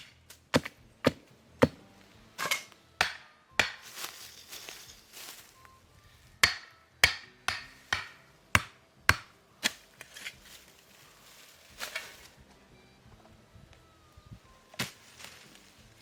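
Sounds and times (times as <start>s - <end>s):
hand tool striking wood: 0.0s - 1.8s, 2.4s - 4.2s, 6.4s - 10.4s.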